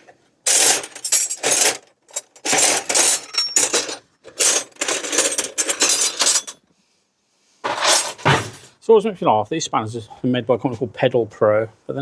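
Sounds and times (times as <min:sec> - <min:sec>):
metal tools clattering in a tool box: 0:00.5 - 0:06.6, 0:07.6 - 0:08.8.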